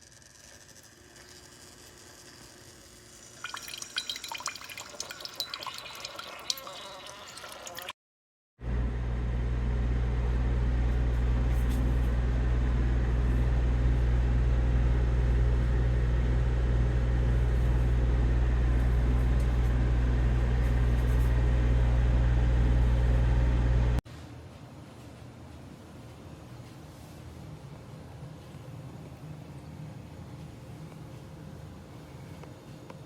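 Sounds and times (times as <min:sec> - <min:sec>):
low mechanical hum: 0:08.6 - 0:33.0.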